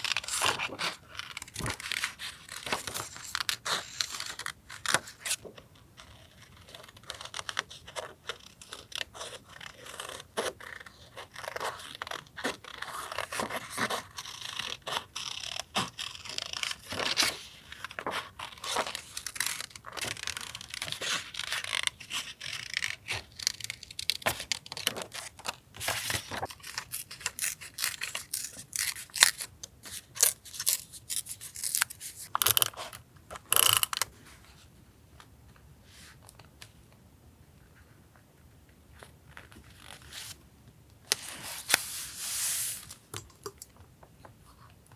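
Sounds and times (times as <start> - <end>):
paper rustling and tearing: 25.8 - 33.0, 41.2 - 43.1
stickers peeled: 26.5 - 34.1.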